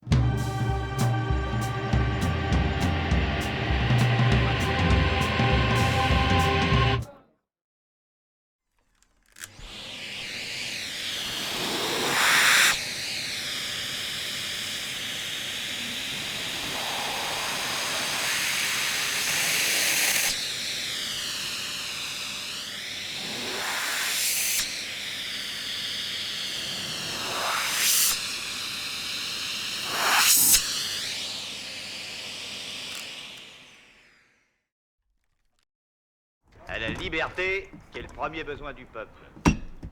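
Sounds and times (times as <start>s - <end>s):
vacuum cleaner motor whine: 0.1s - 7.0s, 9.4s - 34.6s.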